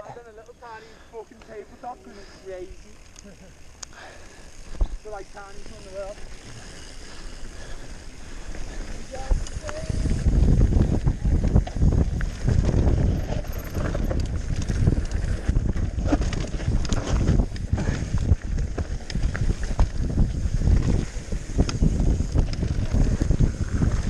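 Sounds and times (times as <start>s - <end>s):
bike tyres over dirt and rocks: 0.0s - 24.0s
bike rattling and knocking: 2.6s - 24.0s
wind buffeting microphone: 4.6s - 24.0s.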